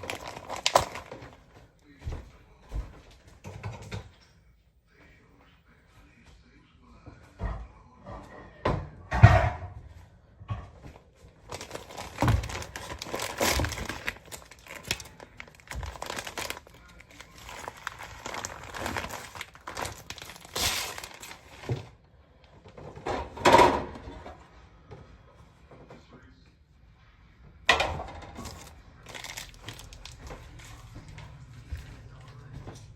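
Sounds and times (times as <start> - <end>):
plastic wrapping crinkling: 0.0 - 1.5, 11.3 - 22.0, 28.3 - 31.3.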